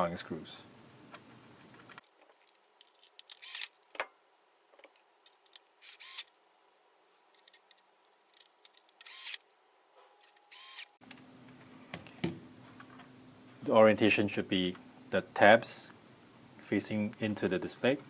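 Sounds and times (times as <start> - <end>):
power screwdriver whirring: 3.3 - 3.7, 5.8 - 6.3, 9.0 - 9.4, 10.5 - 11.0.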